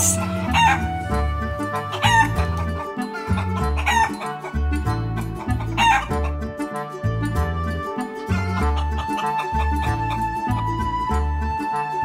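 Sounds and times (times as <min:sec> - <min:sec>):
chicken clucking: 0:00.0 - 0:00.9, 0:01.6 - 0:06.9, 0:08.2 - 0:10.9
background music with bass line: 0:00.0 - 0:12.0.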